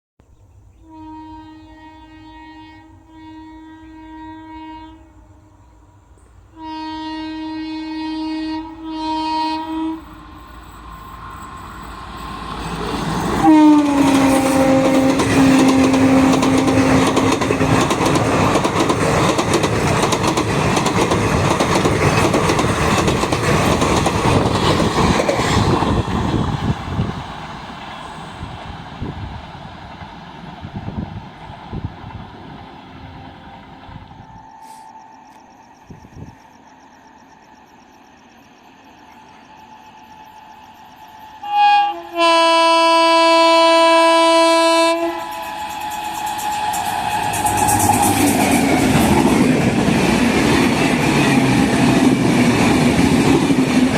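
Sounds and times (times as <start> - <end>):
train horn blasts: 0.8 - 5.7, 6.5 - 10.5, 13.3 - 18.6, 32.8 - 35.4, 41.2 - 49.2
train wheels rushing and clattering: 10.5 - 33.2, 45.2 - 53.9.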